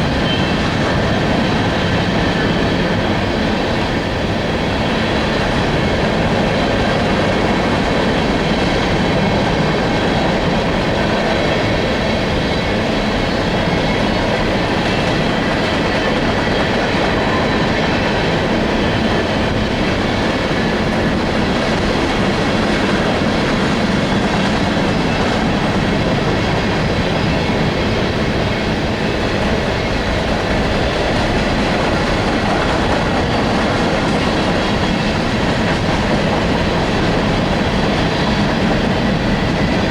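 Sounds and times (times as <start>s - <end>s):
freight train rumbling past: 0.0s - 39.9s
steel wheels clattering over rail joints: 0.0s - 39.9s.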